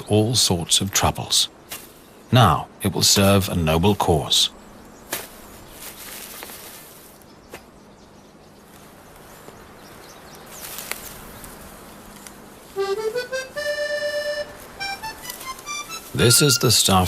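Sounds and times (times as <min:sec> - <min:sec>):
faint outdoor ambience: 0:00.0 - 0:17.0
accordion music: 0:12.6 - 0:17.0.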